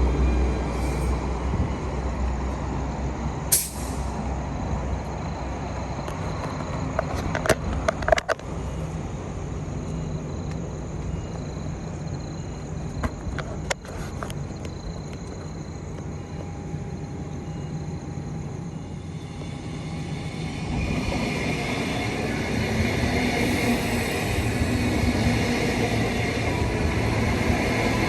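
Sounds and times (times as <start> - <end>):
electric train rumbling: 0.0 - 28.0
sharp hiss of air: 3.5 - 4.2.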